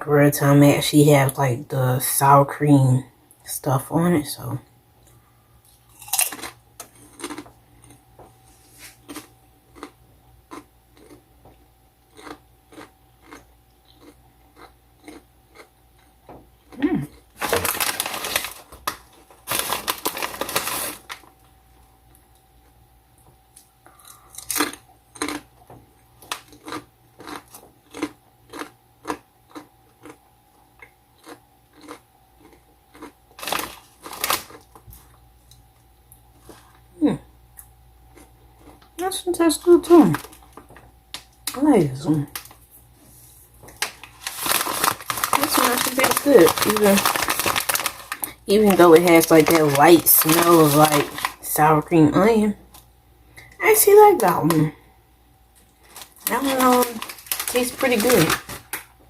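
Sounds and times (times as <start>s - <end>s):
person chewing crunchy chips: 5.0s - 21.3s, 23.8s - 36.9s, 37.5s - 51.6s, 55.5s - 58.8s.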